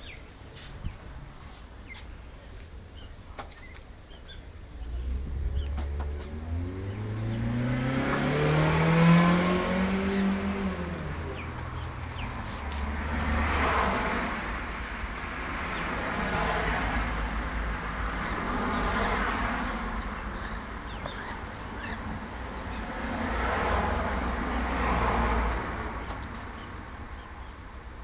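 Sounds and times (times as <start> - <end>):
vehicle accelerating past: 4.8 - 15.0.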